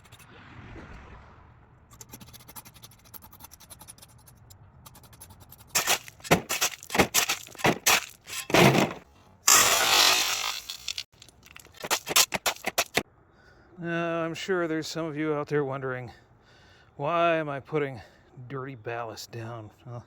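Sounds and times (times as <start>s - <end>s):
metal tool scraping gravel: 5.7s - 13.0s.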